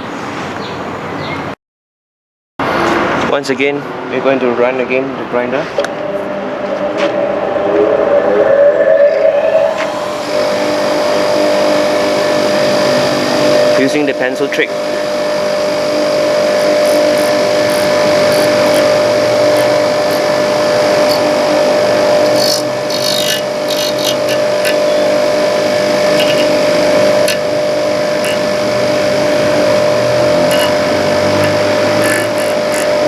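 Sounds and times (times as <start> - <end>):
bench grinder motor whine: 5.5 - 33.0
pencil ticking on grinding wheel: 16.6 - 18.9, 22.2 - 25.0, 26.1 - 26.5, 27.2 - 27.4, 28.2 - 28.5, 30.4 - 30.8, 31.4 - 32.9
pencil scraping grinding wheel: 16.6 - 21.3, 22.2 - 25.0, 25.9 - 27.6, 28.2 - 28.5, 30.4 - 33.0.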